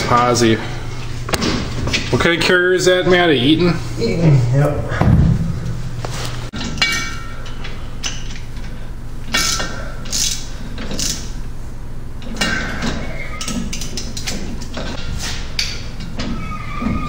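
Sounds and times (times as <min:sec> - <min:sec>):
steady low hum: 0:00.0 - 0:16.5
metal tools clinking: 0:06.6 - 0:08.5.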